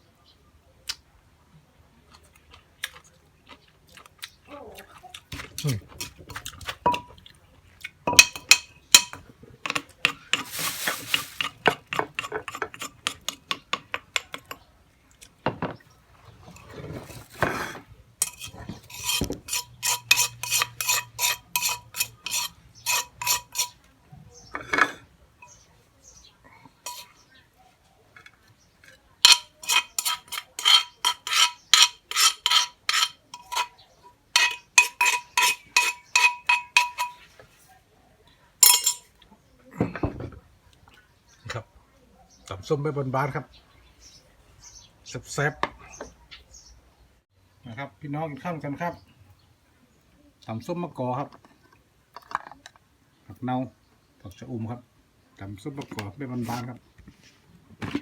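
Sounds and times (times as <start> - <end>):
utensil striking in a mortar: 8.1 - 14.6, 17.4 - 23.8, 29.2 - 33.7, 34.4 - 37.2, 38.6 - 39.0.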